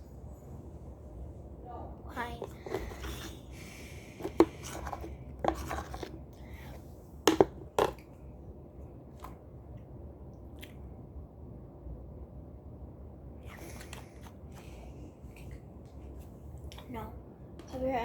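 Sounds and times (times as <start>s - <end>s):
fidget toys knocking and clattering: 2.3s - 3.3s, 7.2s - 8.0s.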